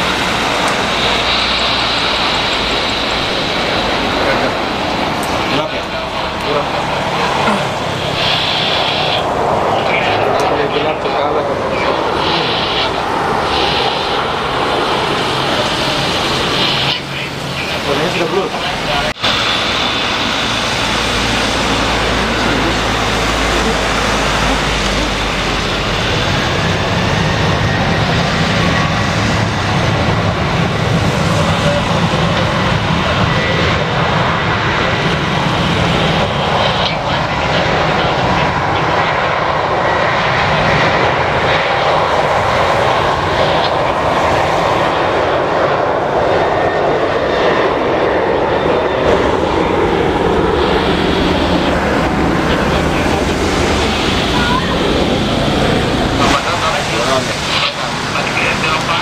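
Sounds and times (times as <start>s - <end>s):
jet engines running: 0.0s - 59.0s.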